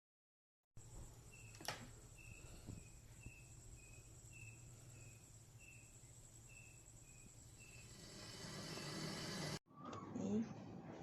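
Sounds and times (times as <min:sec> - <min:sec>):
cricket chirping: 0:00.8 - 0:09.6.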